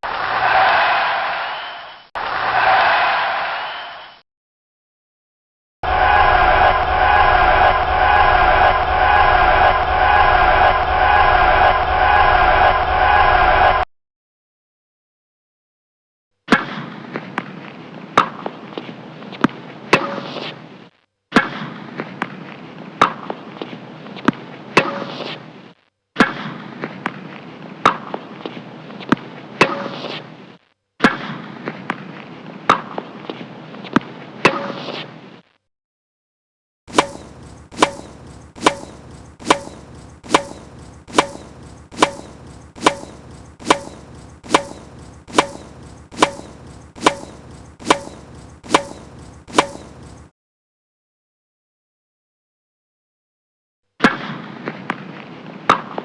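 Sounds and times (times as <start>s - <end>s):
tennis ball being struck: 36.9s - 50.0s.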